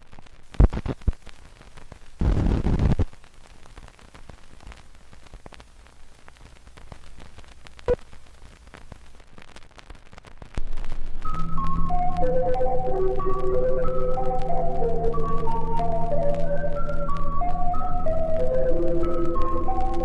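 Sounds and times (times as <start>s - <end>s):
hissing static: 0.0s - 20.0s
burst of noise: 0.5s - 9.3s.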